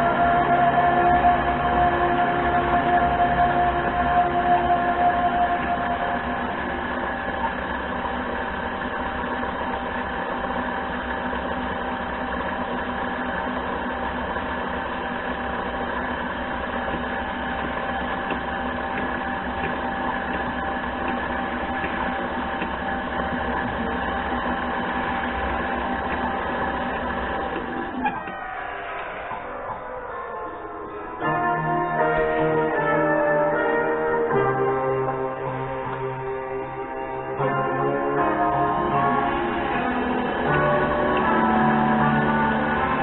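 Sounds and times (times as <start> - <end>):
lathe motor humming: 0.0 - 43.0.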